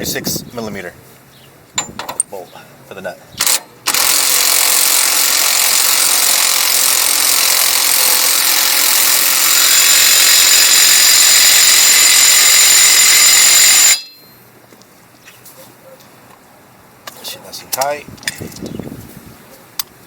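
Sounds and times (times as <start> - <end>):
impact wrench running: 3.4 - 14.4.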